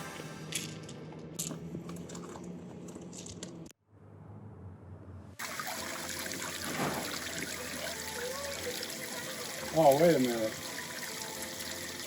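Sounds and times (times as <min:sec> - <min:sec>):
fountain water trickling and splashing: 0:05.4 - 0:12.0
background music: 0:05.6 - 0:12.0.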